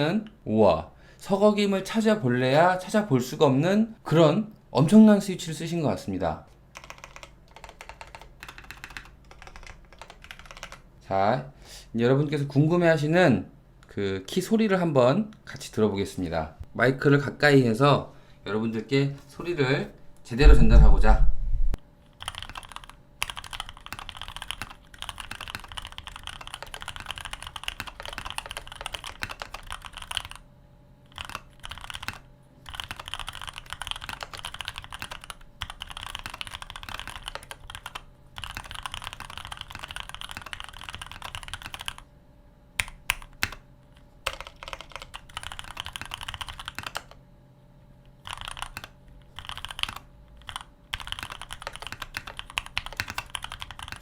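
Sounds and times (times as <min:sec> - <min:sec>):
mechanical keyboard typing: 0:06.8 - 0:10.8, 0:22.1 - 0:30.4, 0:31.1 - 0:42.0, 0:42.8 - 0:43.6, 0:44.2 - 0:47.2, 0:48.2 - 0:54.0.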